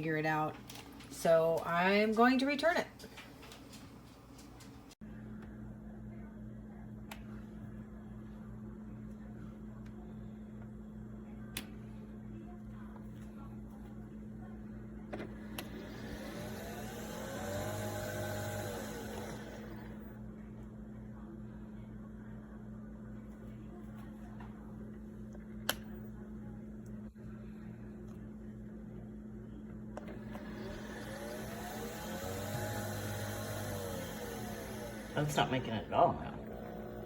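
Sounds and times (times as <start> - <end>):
coffee machine motor hum: 13.0 - 20.8, 24.4 - 37.0
whir rising and falling: 15.5 - 20.1, 30.0 - 37.0.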